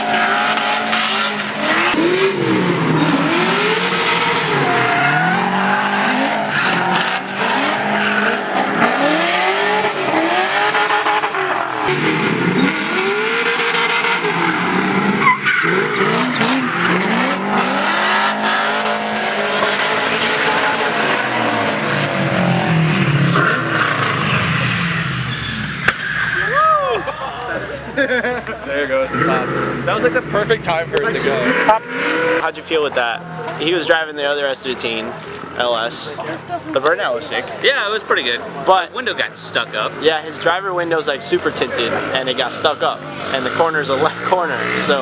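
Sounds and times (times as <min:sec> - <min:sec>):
engine revving: 0:00.0 - 0:26.5, 0:28.8 - 0:45.0
tyre squeal: 0:12.4 - 0:18.7, 0:22.5 - 0:27.5
sharp crack: 0:25.8 - 0:26.2.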